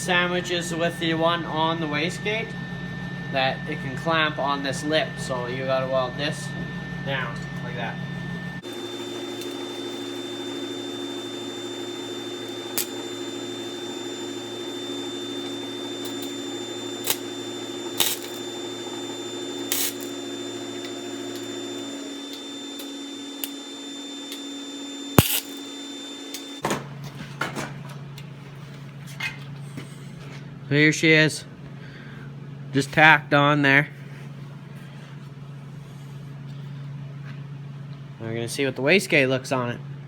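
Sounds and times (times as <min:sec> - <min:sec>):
welder humming: 0:00.0 - 0:26.6
welding arc crackles: 0:08.6 - 0:26.6.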